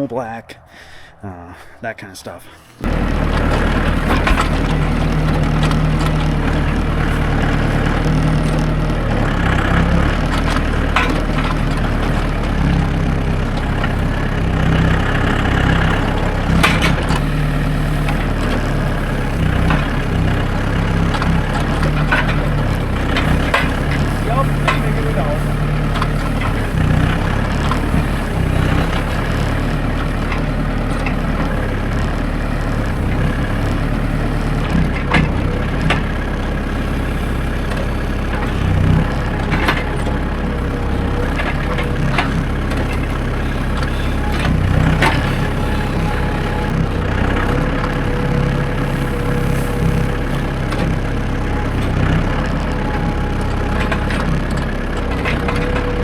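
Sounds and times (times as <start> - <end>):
tractor engine running: 0.0 - 56.0
sharp clicks and knocks: 15.4 - 36.7.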